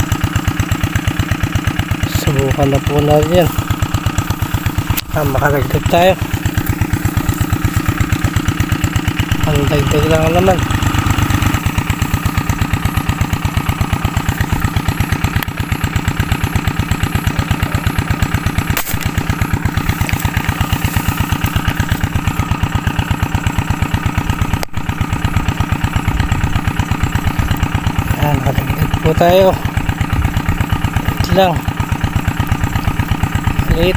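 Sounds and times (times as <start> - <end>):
small engine running: 0.0 - 33.9
sharp click: 18.7 - 19.2.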